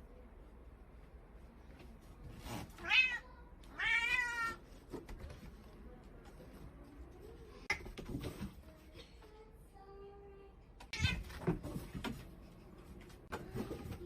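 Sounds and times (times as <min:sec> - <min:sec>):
cat meowing: 0:02.8 - 0:04.6.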